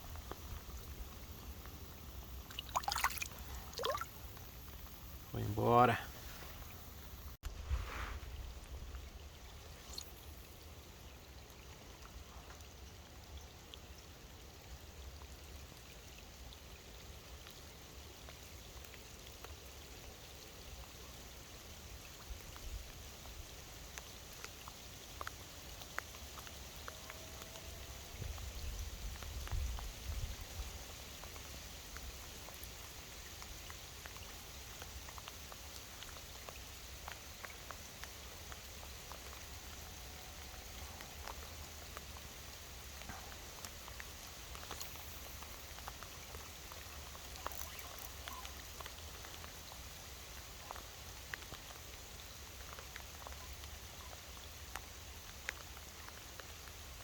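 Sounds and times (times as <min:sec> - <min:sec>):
raindrops ticking: 0:00.0 - 0:06.2, 0:22.0 - 0:29.9, 0:31.2 - 0:57.0
rain hissing: 0:00.0 - 0:11.1.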